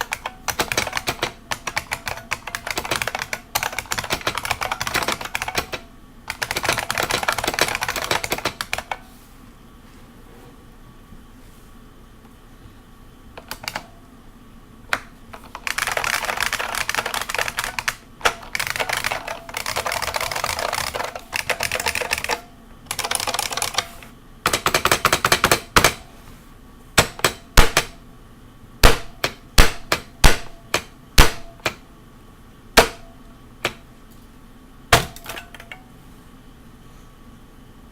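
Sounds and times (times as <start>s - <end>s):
clicking keyboard typing: 0.0s - 9.0s, 13.4s - 13.9s, 14.9s - 26.0s.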